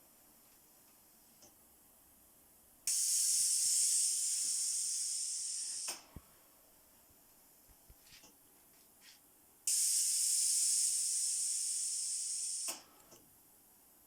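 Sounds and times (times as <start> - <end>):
compressed air hissing through valve: 2.9 - 6.2, 9.7 - 13.0
valve clicks: 9.7 - 13.3.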